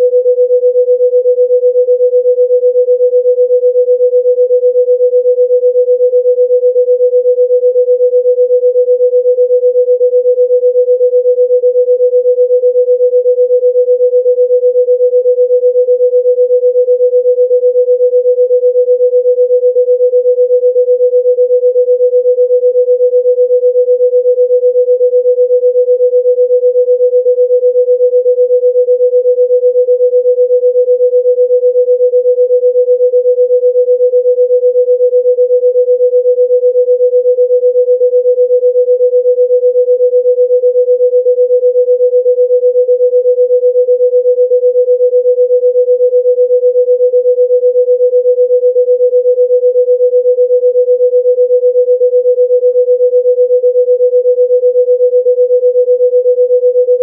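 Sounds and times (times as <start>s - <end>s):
steady electronic pure tone: 0.0s - 1.4s.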